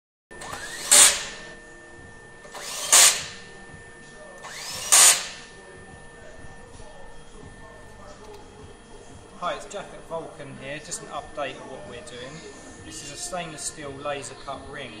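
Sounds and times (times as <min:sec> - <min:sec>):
power tool rising whine and hiss: 0:00.3 - 0:01.8, 0:02.4 - 0:05.7
faint machine whine: 0:00.3 - 0:15.0.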